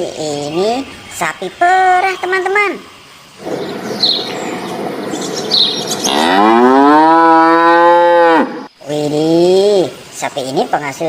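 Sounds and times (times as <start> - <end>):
cow mooing: 5.7 - 8.7.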